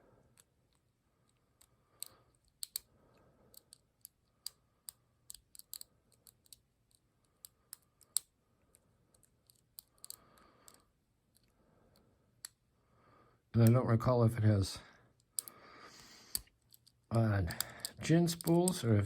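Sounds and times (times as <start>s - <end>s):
lock pick clicks: 2.0s - 2.9s, 3.5s - 6.6s, 15.2s - 15.5s.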